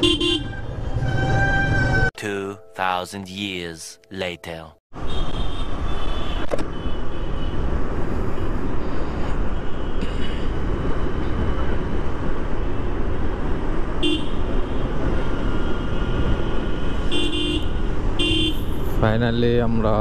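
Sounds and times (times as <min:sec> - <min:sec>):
vehicle horn toot: 0:00.0 - 0:02.0, 0:05.0 - 0:07.5, 0:17.0 - 0:18.7
road traffic: 0:00.0 - 0:03.7, 0:04.4 - 0:20.0.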